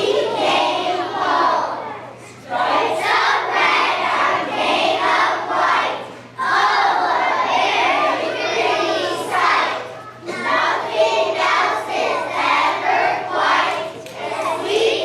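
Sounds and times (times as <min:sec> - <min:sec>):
children singing together: 0:00.0 - 0:15.0.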